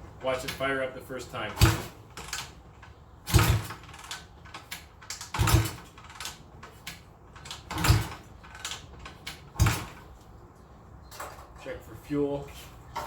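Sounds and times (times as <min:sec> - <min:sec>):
engine turning over: 0:01.6 - 0:10.1.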